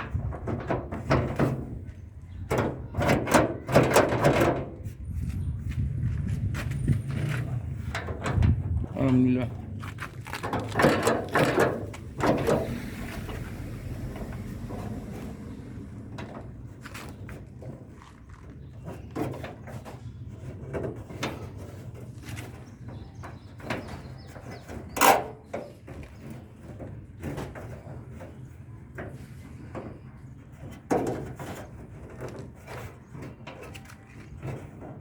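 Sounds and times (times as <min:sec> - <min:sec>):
clicks and rattles of door lock: 0:10.4 - 0:12.7.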